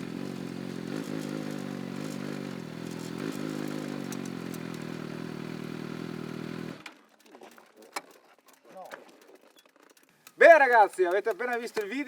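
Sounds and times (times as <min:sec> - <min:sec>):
road noise: 0:00.0 - 0:06.9
motorcycle engine and exhaust: 0:00.0 - 0:07.2.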